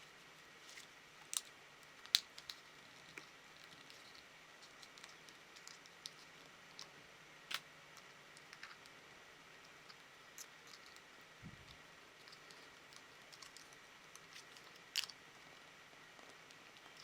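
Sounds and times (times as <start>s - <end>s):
small parts clicking: 1.2s - 2.6s, 11.7s - 15.2s.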